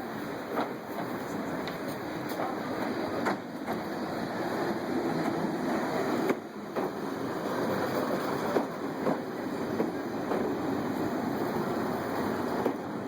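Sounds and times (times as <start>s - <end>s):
train rushing: 0.0s - 13.0s.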